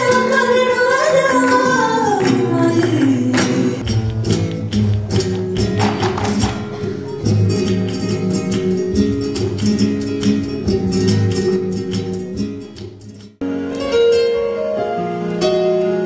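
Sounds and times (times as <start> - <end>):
plucked guitar music: 0.0 - 16.0
sharp percussive strikes: 3.4 - 13.4.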